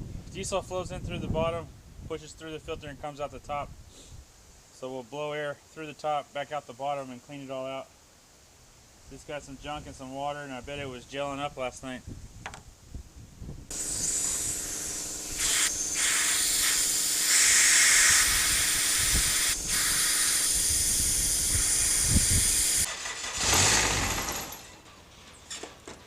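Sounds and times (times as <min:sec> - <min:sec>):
compressed air hissing: 0:03.8 - 0:04.2, 0:13.7 - 0:22.9.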